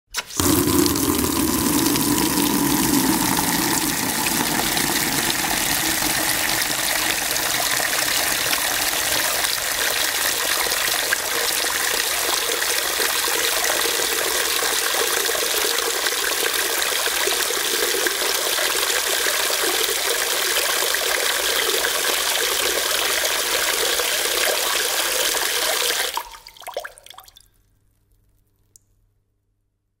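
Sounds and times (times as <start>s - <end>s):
tap water filling plastic bucket: 0.2s - 27.4s
water drips: 0.4s - 13.6s, 26.1s - 27.7s.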